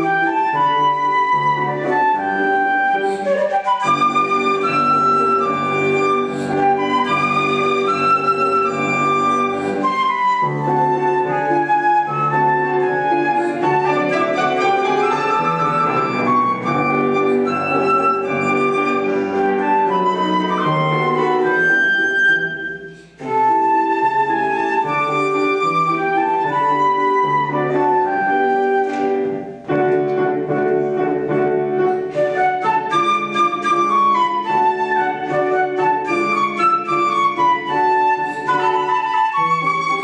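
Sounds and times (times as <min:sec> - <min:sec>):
flute playing waltz melody: 0:00.0 - 0:40.0
piano accompaniment: 0:00.0 - 0:40.0.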